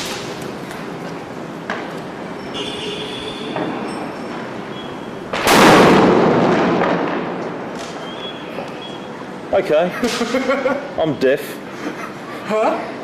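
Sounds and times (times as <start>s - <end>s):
firecracker bang: 0.0s - 0.4s, 5.3s - 8.1s.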